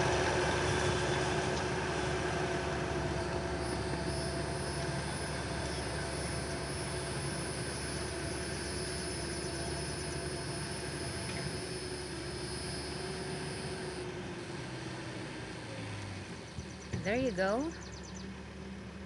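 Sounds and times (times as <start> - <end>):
steady high whine: 0.0 - 14.9
skid steer engine hum: 0.0 - 19.0.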